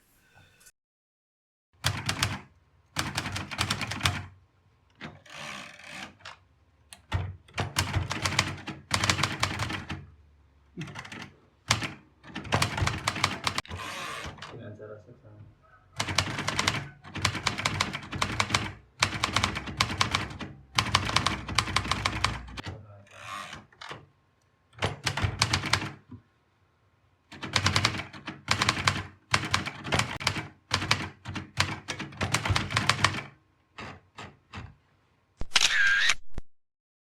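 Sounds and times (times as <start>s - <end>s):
typewriter keystroke clacks: 1.8s - 4.3s, 7.0s - 10.0s, 10.8s - 13.7s, 16.0s - 22.8s, 24.8s - 26.0s, 27.3s - 34.7s.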